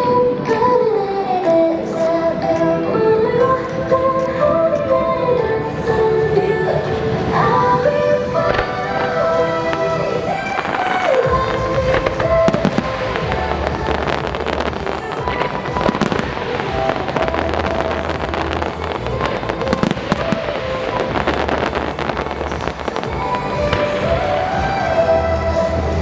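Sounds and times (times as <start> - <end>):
loud music: 0.0 - 26.0
fireworks bursting and crackling: 6.7 - 26.0
heavy firework bangs: 8.4 - 25.0.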